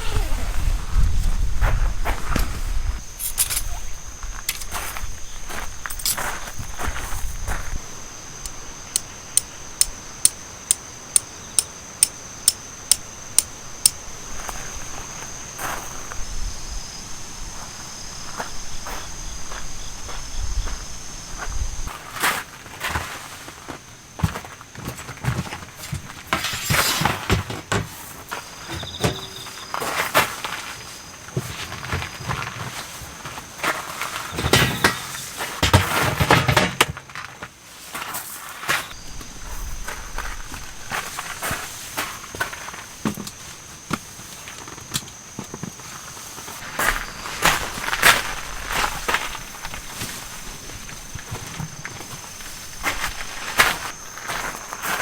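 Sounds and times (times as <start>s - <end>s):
insects chirping: 0.0s - 55.0s
camp gear knocking and rustling: 2.3s - 11.8s, 24.2s - 38.1s, 41.6s - 46.0s, 46.6s - 55.0s
footsteps: 24.2s - 30.7s
pulsed high insect trill: 26.1s - 27.5s, 28.3s - 30.1s, 34.2s - 36.0s.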